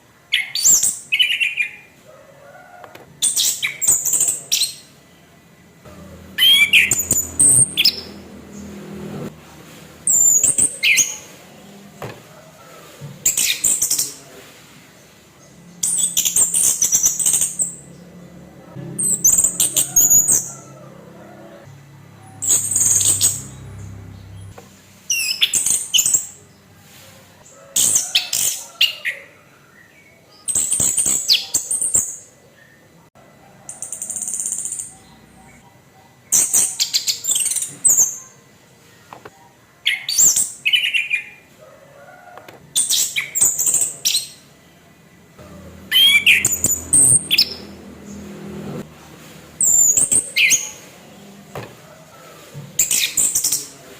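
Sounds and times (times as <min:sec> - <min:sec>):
thrush singing: 0:05.8 - 0:12.6, 0:45.4 - 0:52.6.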